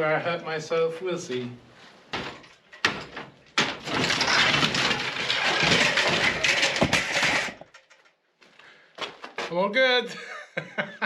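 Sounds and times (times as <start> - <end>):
demolition debris crashing down: 2.2 - 8.1.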